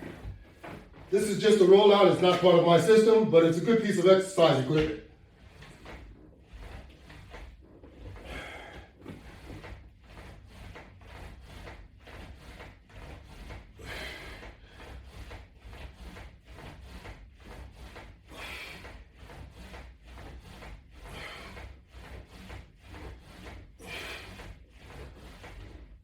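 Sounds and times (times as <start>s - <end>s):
ab roller wheel rolling on floor: 0.0s - 26.0s
person breathing: 8.2s - 9.0s.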